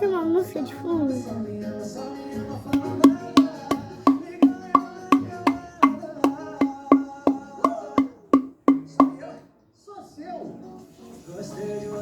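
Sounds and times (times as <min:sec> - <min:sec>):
background music of struck notes: 0:02.8 - 0:09.2.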